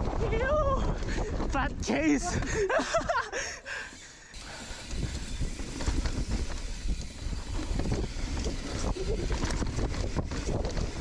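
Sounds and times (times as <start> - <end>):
wind buffeting microphone: 0.0 - 2.6, 4.4 - 11.0
tyres rumbling on dirt trail: 4.0 - 11.0
bike knocks and rattles: 4.4 - 11.0.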